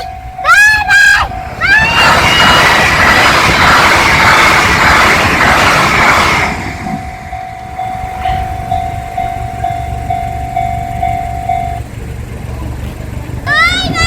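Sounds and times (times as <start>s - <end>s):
level crossing alarm dinging: 0.0s - 2.5s, 6.8s - 12.1s
train rushing past: 0.0s - 14.0s.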